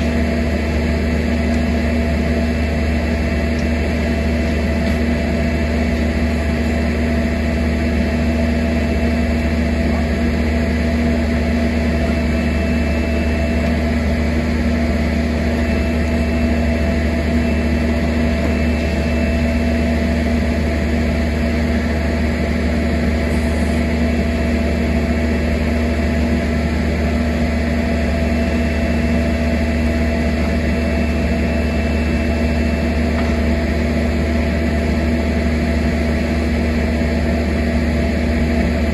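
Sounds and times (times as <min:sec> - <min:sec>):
machine engine running: 0:00.0 - 0:38.9.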